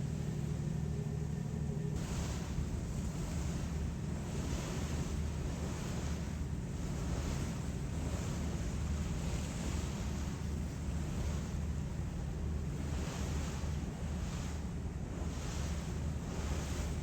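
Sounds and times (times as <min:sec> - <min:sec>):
ship engines droning: 0:00.0 - 0:03.5
water rushing along hull: 0:00.0 - 0:17.0.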